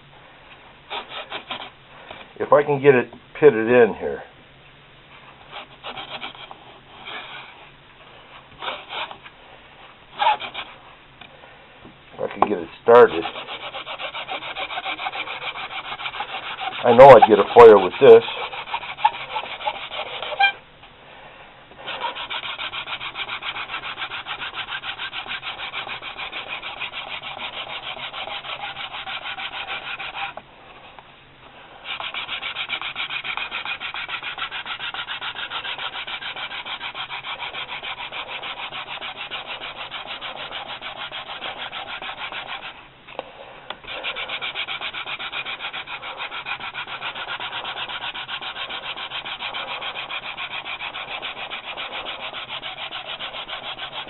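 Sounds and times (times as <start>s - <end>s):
hand drill rasping on wood: 0.9s - 1.7s, 5.5s - 7.6s, 8.6s - 9.2s, 10.2s - 10.7s, 12.4s - 20.6s, 21.8s - 30.4s, 31.8s - 42.8s, 43.9s - 54.0s.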